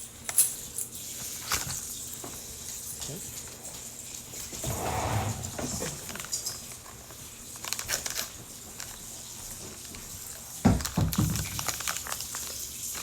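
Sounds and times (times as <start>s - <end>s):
thump: 4.6s - 6.1s.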